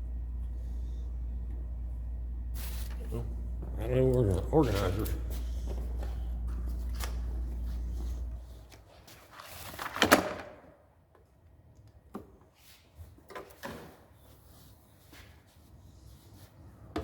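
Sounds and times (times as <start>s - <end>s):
steady low hum: 0.0s - 8.9s.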